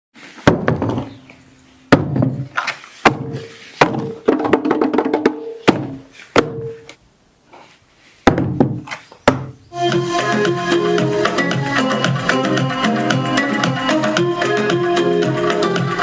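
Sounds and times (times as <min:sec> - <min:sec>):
music from portable speaker: 0:09.7 - 0:16.0.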